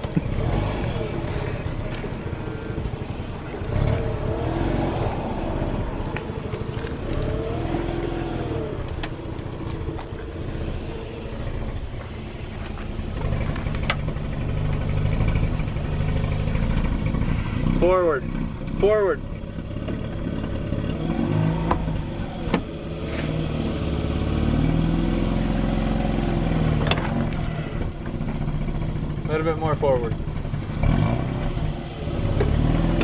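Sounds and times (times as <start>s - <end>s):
rotary engine running: 0.0s - 18.7s.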